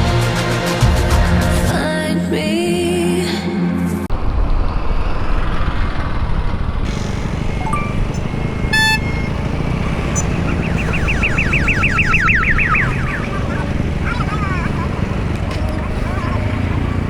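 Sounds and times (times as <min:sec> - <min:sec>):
motorcycle road and wind noise: 0:04.1 - 0:17.0
vehicle horn toot: 0:06.9 - 0:14.2
warbling electronic tone: 0:07.0 - 0:13.4.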